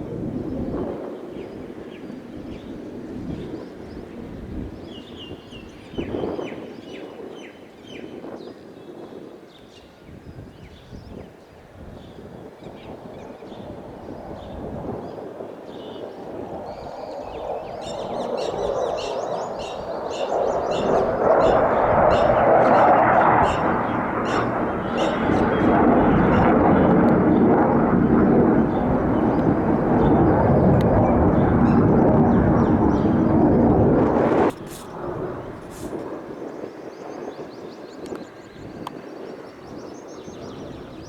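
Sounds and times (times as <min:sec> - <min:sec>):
fighter jet engine roar: 0:13.2 - 0:37.4
high bird chirps: 0:17.8 - 0:26.4.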